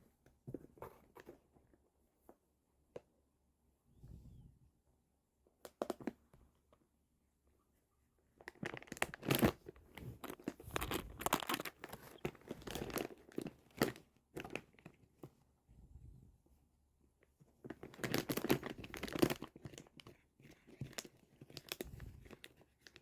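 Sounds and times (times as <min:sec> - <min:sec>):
plastic packaging crinkling: 0:08.4 - 0:15.0, 0:17.7 - 0:23.0.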